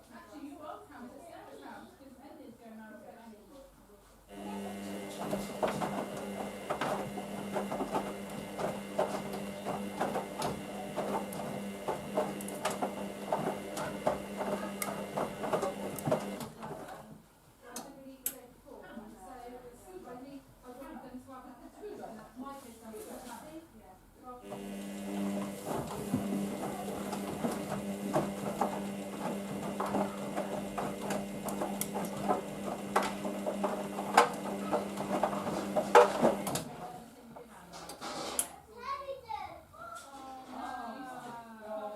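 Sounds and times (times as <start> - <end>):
washing machine hum: 4.3 - 16.9, 24.4 - 36.9
clicks and knocks of tumbling load: 5.0 - 16.7, 24.5 - 36.7.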